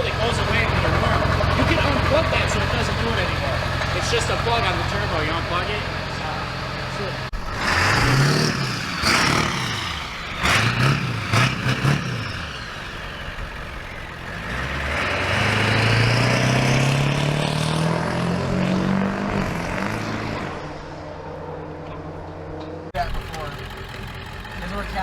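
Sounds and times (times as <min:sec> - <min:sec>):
diesel engine revving: 0:00.0 - 0:25.0.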